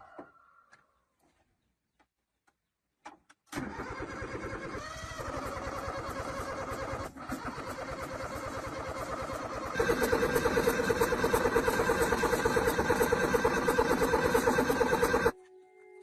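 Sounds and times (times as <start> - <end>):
small tractor engine running: 3.6 - 15.4.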